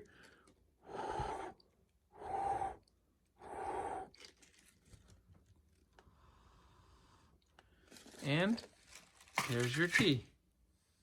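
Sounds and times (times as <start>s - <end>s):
person blowing on tea: 0.8s - 4.3s.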